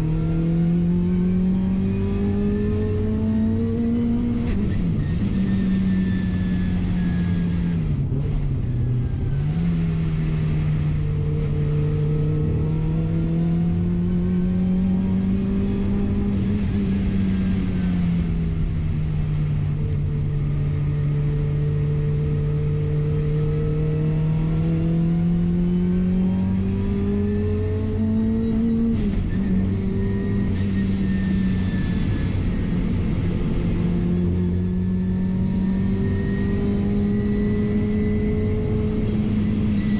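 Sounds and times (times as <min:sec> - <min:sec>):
car engine running under load: 0:00.0 - 0:39.9.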